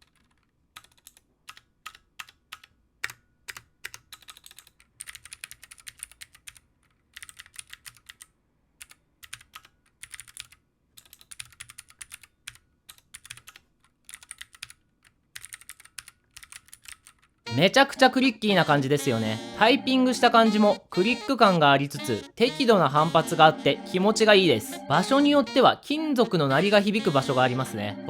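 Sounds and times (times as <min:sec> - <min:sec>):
clicky mechanical keyboard typing: 0:00.0 - 0:14.8, 0:15.4 - 0:17.3.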